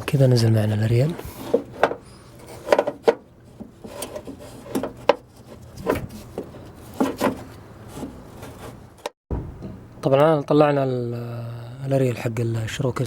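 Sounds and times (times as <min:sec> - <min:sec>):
antenna assembly knocking: 0:01.5 - 0:02.0, 0:02.6 - 0:07.5.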